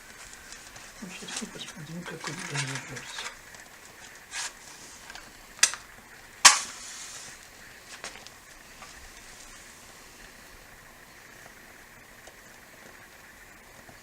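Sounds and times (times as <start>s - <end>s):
soft hiss: 0.0s - 14.0s
sharp scrapes or strikes: 6.4s - 7.4s.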